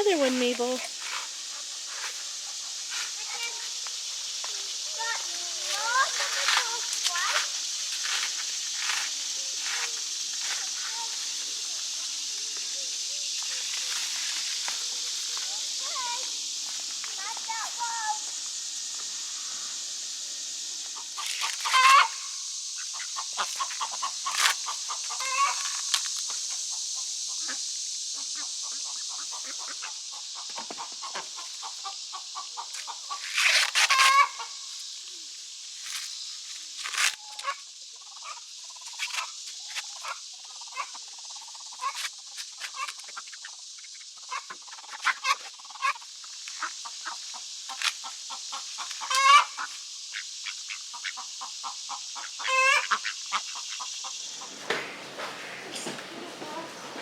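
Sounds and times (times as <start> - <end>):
steady high hiss: 0.0 - 57.0
chickens clucking and calling: 20.9 - 34.7, 39.9 - 42.0, 42.8 - 57.0.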